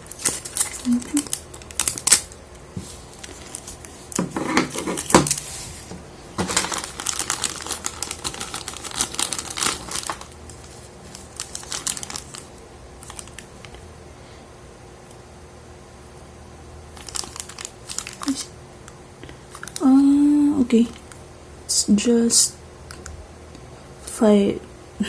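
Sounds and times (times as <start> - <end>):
plastic packaging crinkling: 0.0 - 13.8, 17.0 - 18.5.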